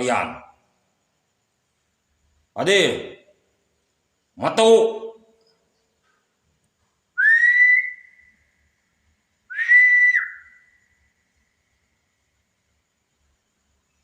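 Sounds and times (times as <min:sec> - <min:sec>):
long whistled notes: 0:07.2 - 0:11.4.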